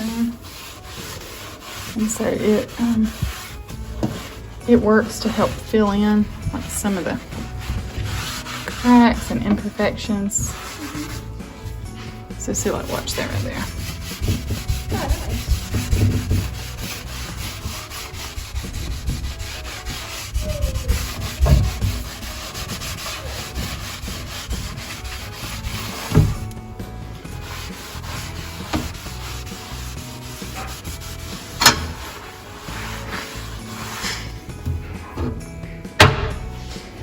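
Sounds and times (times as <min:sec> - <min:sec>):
scrubbing strokes on wood: 0:00.0 - 0:35.6
sharp knocks: 0:36.0 - 0:36.5.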